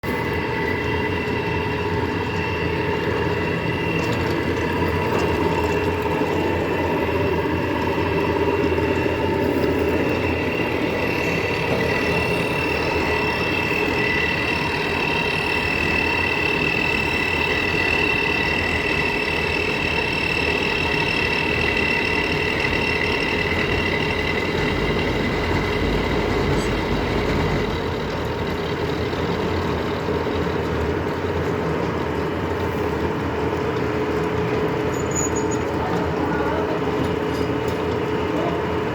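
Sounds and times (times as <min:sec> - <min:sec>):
lathe machine hum: 0:00.0 - 0:38.9
high whining tones: 0:00.1 - 0:28.2.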